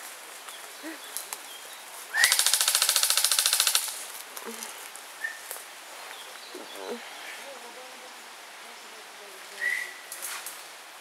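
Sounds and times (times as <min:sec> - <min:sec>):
airsoft gun full-auto burst: 0:02.3 - 0:04.0.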